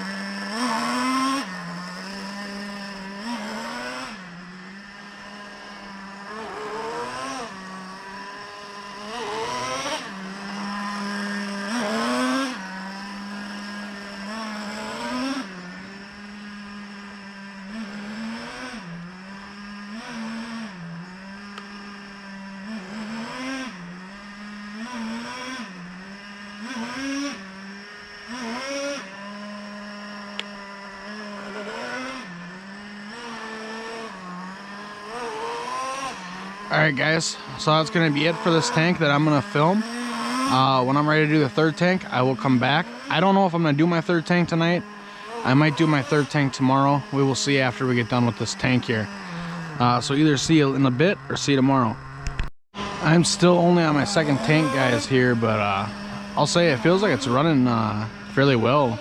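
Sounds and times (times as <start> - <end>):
small nitro engine revving: 0.0 - 59.0
person talking: 36.7 - 39.9, 40.5 - 52.0, 53.0 - 59.0.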